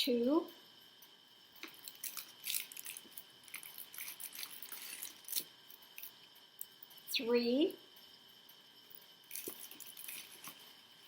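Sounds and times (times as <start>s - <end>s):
packaging rustling: 1.6s - 5.5s, 9.3s - 10.7s
plastic packaging crackling: 1.6s - 6.2s, 9.3s - 10.7s.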